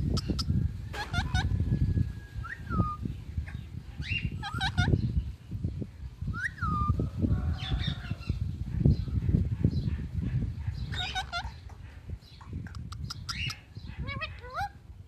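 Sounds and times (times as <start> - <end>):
parakeet squawking: 0.1 - 1.5, 4.0 - 5.0, 10.8 - 11.6, 12.8 - 14.8.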